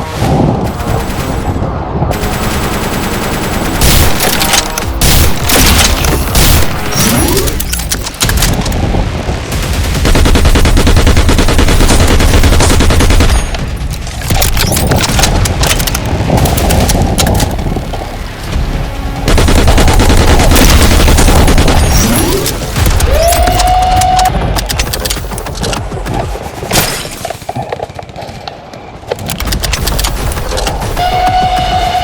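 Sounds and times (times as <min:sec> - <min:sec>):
deep rumble: 0:00.0 - 0:26.5
automatic gunfire bursts: 0:09.6 - 0:17.2.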